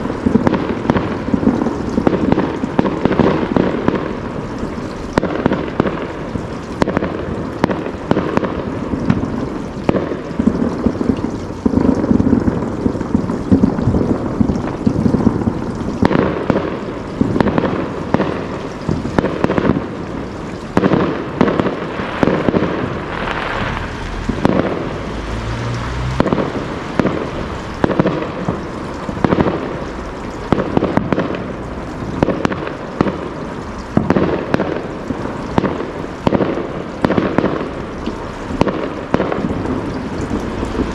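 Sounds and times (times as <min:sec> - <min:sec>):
fireworks bangs and crackling: 0:00.0 - 0:40.9.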